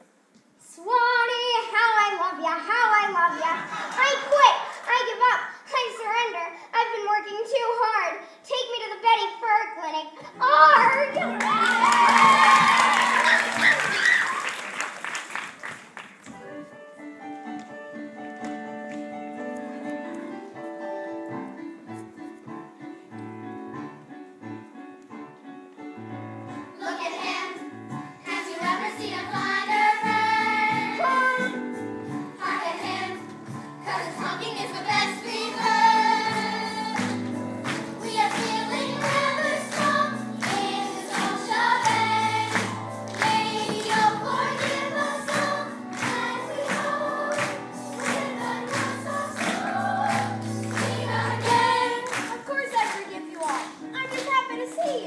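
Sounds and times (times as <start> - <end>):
instrumental accompaniment: 16.3 - 55.0
group singing: 28.2 - 31.5, 32.4 - 52.4.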